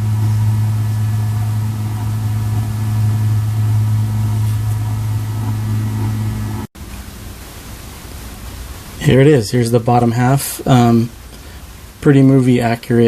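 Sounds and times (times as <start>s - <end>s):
small electric motor humming: 0.0s - 6.7s.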